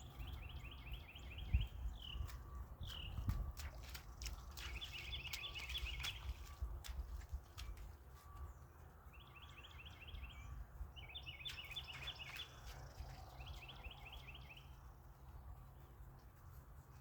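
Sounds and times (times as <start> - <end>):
songbird trilling: 4.6 - 6.4, 9.1 - 14.7.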